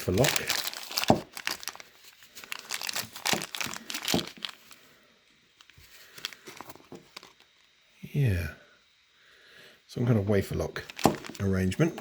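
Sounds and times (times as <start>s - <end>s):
packaging crinkling and rustling: 0.0s - 4.8s, 5.6s - 7.7s, 10.8s - 11.8s.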